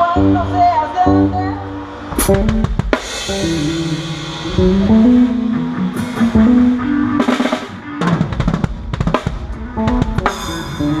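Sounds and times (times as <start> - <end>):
sustained instrument notes: 0.0 - 7.8
drum kit playing: 1.9 - 11.0.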